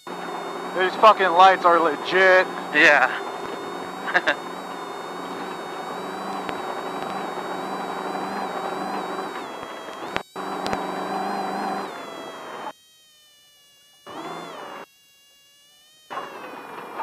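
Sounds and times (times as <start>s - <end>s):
race car engine running: 0.0s - 12.7s, 14.1s - 14.8s.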